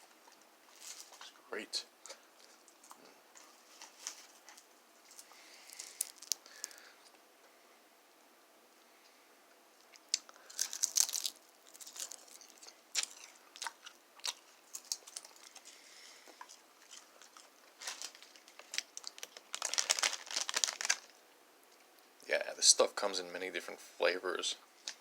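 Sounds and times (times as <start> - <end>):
dog crunching seaweed snack: 0.1 - 1.4, 2.0 - 6.8, 9.9 - 21.2.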